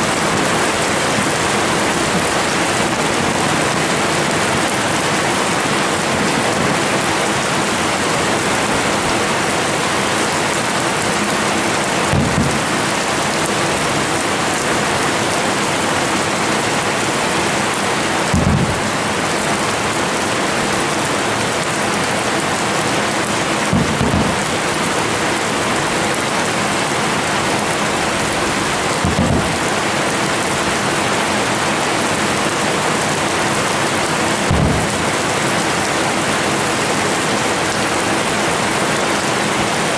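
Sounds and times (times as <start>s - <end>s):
heavy rain hissing: 0.0s - 39.9s
dull low firework booms: 12.0s - 13.1s, 18.3s - 19.1s, 23.7s - 24.5s, 29.0s - 29.8s, 34.5s - 35.2s.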